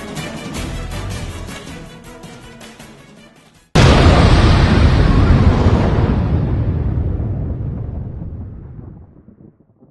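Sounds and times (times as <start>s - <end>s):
explosion rumble: 3.8s - 9.9s.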